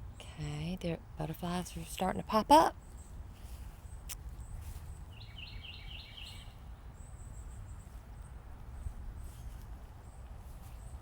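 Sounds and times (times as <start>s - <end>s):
wind rumble on microphone: 2.8s - 11.0s.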